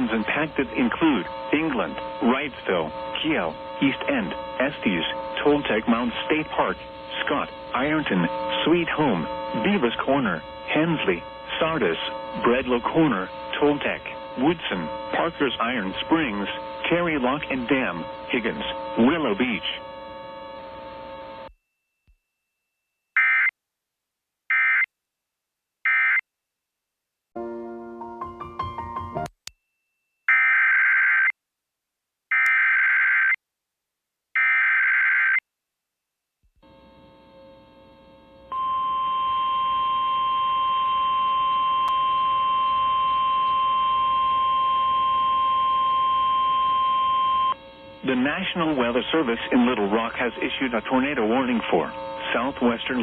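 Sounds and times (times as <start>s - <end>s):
harsh digital data bursts: 0.0s - 19.8s, 47.6s - 53.0s
faint receiver hum: 0.0s - 21.6s, 36.6s - 53.0s
steady background tone: 0.0s - 21.6s, 36.6s - 53.0s.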